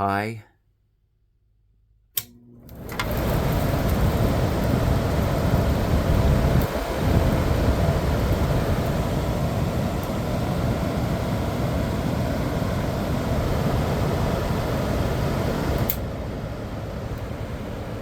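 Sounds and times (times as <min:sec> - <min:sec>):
click: 0:02.2 - 0:03.2, 0:15.8 - 0:16.0
air conditioner fan rushing air: 0:02.2 - 0:18.0.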